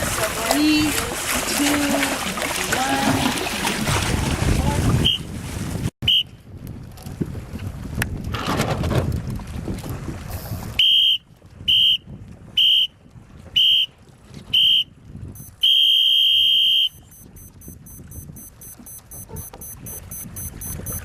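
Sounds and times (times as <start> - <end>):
water noise: 0.0 - 21.0
wind: 0.0 - 21.0
race timer beeping: 15.4 - 21.0.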